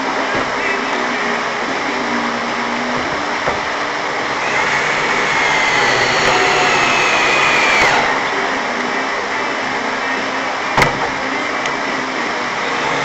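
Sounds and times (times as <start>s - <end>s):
power drill motor whining: 0.0s - 9.8s, 11.1s - 13.0s
steady rushing noise: 0.0s - 13.0s.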